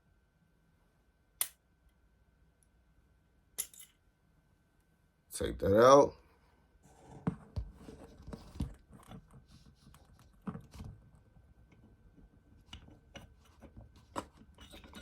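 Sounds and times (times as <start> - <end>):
pistol parts clicking: 1.4 - 1.6, 3.6 - 4.0.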